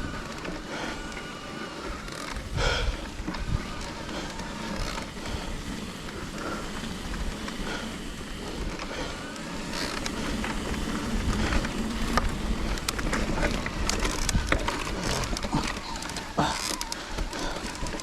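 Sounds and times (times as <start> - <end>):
bike clicks and rattles: 0.0 - 18.0
tyre noise on dirt trail: 0.0 - 18.0.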